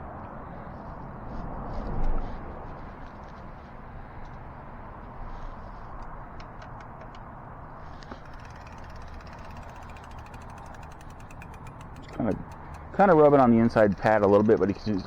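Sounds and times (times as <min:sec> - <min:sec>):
bike freewheel clicking: 0:07.8 - 0:15.0
brake rubbing on wheel: 0:07.8 - 0:15.0.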